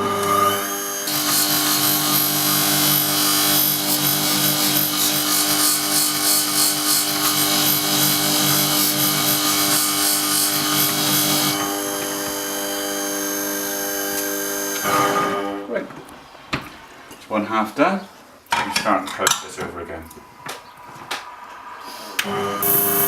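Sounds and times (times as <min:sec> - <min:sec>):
blade rasping on polishing plate: 0:01.1 - 0:11.6.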